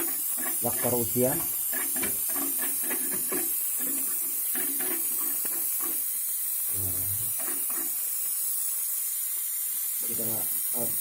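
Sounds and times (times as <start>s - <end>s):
high-pitched gas hiss: 0.0s - 11.0s.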